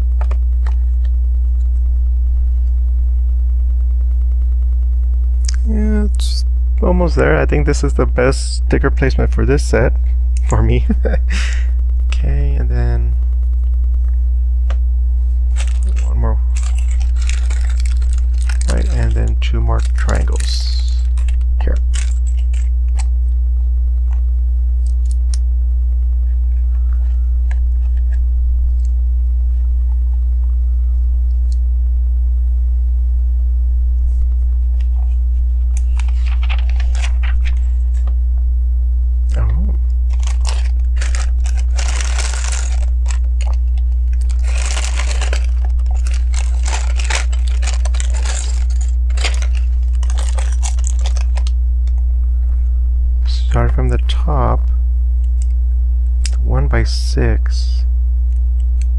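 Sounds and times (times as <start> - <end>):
low electrical hum: 0.0 - 58.9
plastic pieces clicking: 15.5 - 19.1, 19.8 - 23.1, 40.1 - 51.5
plastic bag crinkling: 15.5 - 23.1, 35.6 - 38.1, 40.1 - 52.0.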